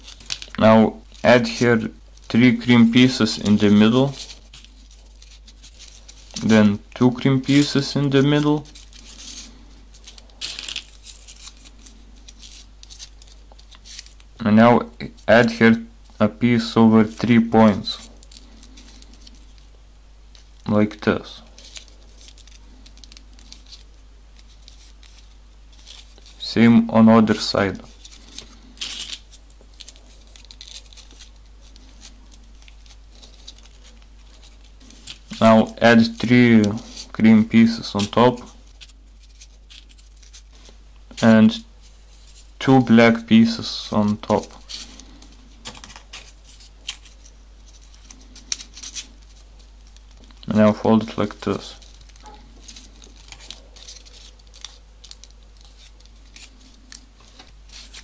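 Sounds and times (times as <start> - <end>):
paper rustling and ticking: 0.0 - 26.4, 27.2 - 58.0.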